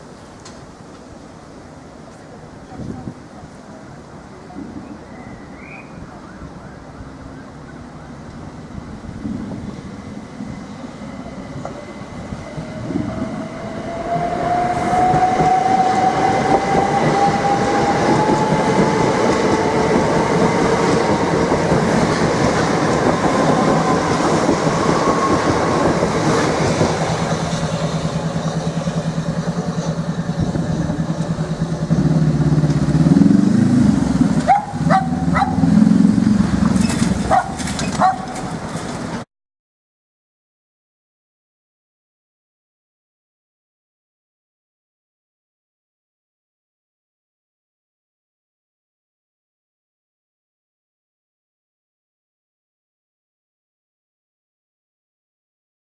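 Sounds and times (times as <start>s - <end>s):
train wheel noise: 6.8s - 39.2s.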